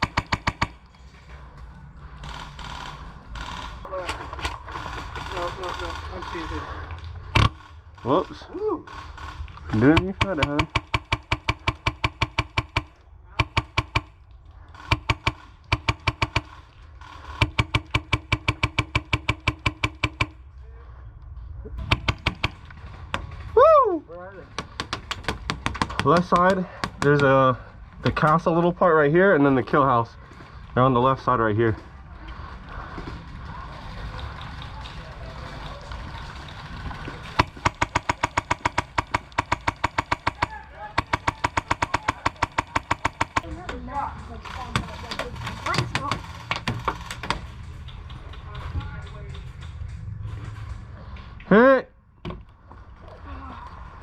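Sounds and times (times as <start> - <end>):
airsoft rifle rapid shots: 0.0 - 0.8, 8.9 - 14.1, 14.8 - 20.4, 37.4 - 43.6
low background rumble: 0.0 - 54.0.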